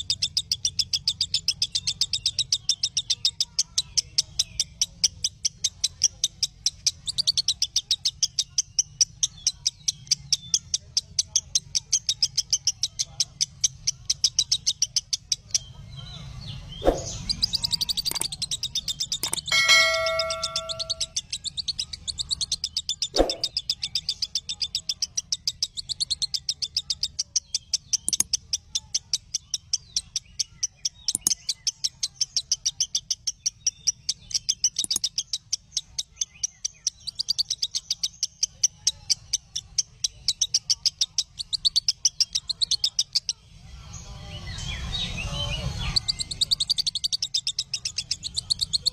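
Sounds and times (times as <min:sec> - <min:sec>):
lovebird chattering: 0:00.0 - 0:15.7, 0:16.8 - 0:43.4, 0:44.6 - 0:48.9
brief ringing tone: 0:19.5 - 0:21.1.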